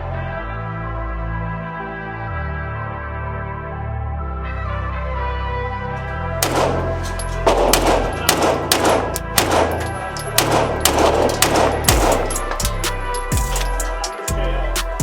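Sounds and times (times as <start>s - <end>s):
background music: 0.0s - 15.0s
handgun shots: 6.2s - 13.9s.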